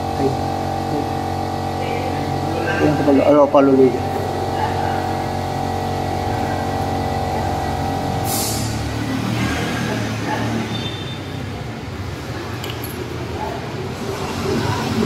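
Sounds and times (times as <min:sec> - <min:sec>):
machine humming: 0:00.0 - 0:10.8
rough noisy rumble: 0:00.0 - 0:15.0.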